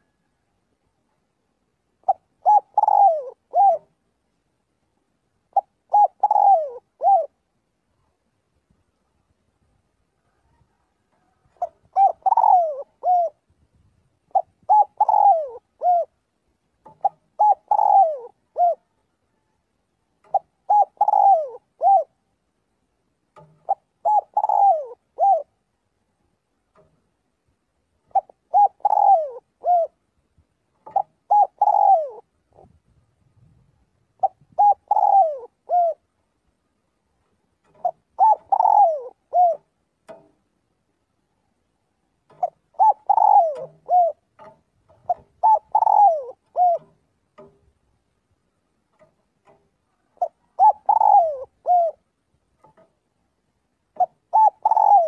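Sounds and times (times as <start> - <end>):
dove cooing: 0.0 - 0.5, 2.0 - 4.0, 5.5 - 7.5, 10.2 - 13.5, 14.2 - 19.6, 20.2 - 22.3, 23.4 - 25.7, 28.0 - 30.1, 30.7 - 32.8, 34.1 - 36.2, 37.6 - 40.3, 42.3 - 47.6, 48.9 - 52.9, 53.9 - 55.0.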